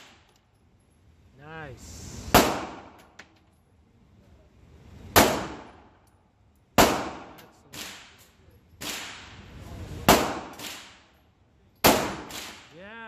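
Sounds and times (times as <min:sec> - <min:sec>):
handgun shots with echo: 0:02.3 - 0:03.2, 0:05.2 - 0:05.8, 0:06.8 - 0:08.2, 0:10.1 - 0:11.0, 0:11.8 - 0:12.7.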